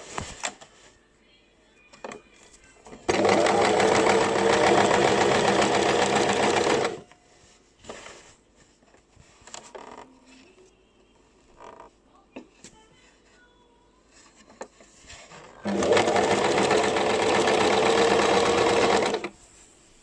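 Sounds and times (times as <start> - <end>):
sewing machine stitching: 3.1 - 7.0, 15.6 - 19.4.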